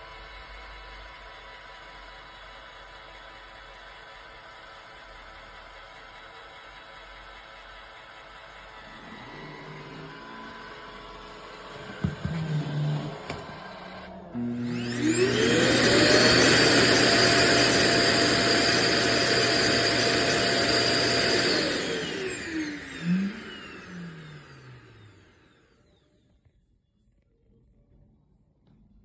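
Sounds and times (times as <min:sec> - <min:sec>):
suction motor whining: 0:08.6 - 0:26.0.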